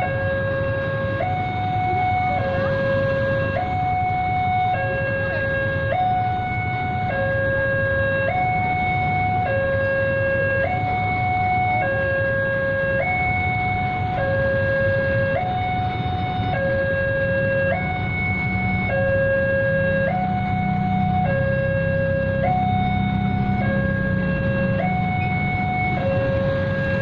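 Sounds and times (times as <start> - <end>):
two-tone crossing alarm: 0.0 - 27.0.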